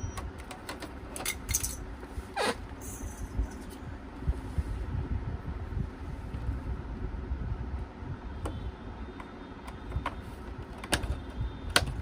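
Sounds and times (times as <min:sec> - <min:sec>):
low steady rumble: 0:00.0 - 0:12.0
handling noise: 0:00.2 - 0:04.4.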